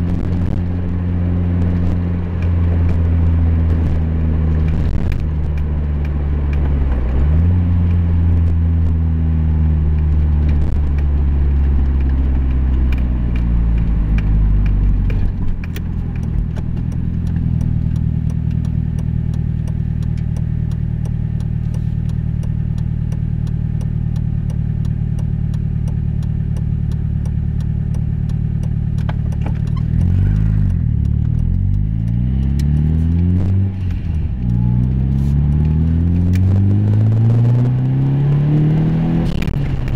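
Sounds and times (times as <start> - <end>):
vehicle engine running: 0.0 - 39.9
sharp ticks: 9.8 - 39.9.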